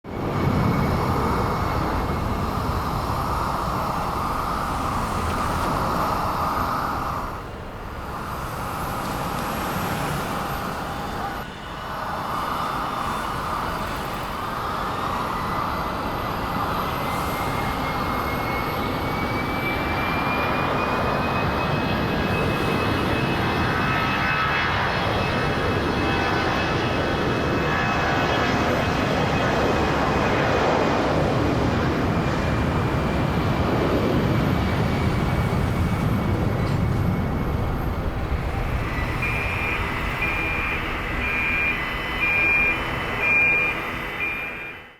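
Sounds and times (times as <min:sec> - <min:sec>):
airplane engine drone: 0:00.0 - 0:44.9
high whine rising in pitch: 0:37.2 - 0:44.9.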